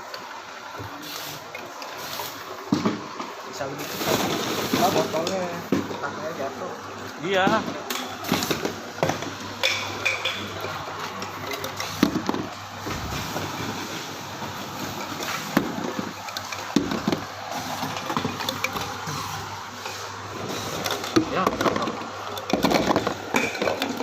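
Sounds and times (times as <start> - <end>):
machine motor and conveyor hum: 0.0 - 24.0
bottles knocking and clinking: 7.6 - 10.7, 21.0 - 24.0.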